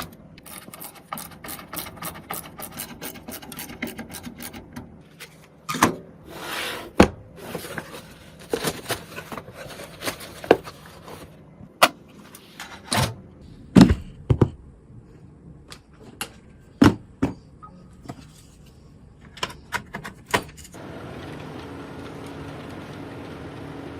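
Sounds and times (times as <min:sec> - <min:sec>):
steady even hum: 0:20.7 - 0:23.9.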